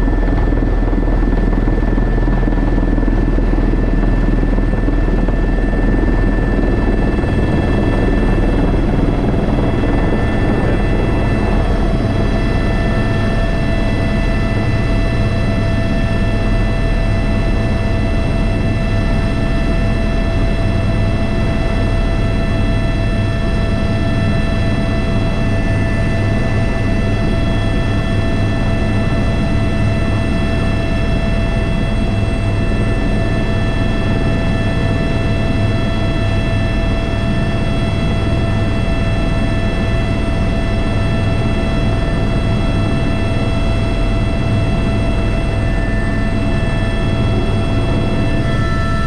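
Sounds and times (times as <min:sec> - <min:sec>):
helicopter rotor drone: 0:00.0 - 0:49.0
high-pitched turbine whine: 0:00.0 - 0:49.0.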